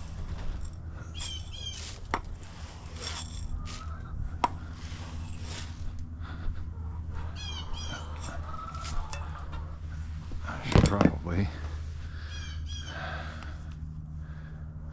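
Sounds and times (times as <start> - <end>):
steady low hum: 0.0 - 14.9
short bird calls: 12.2 - 13.1.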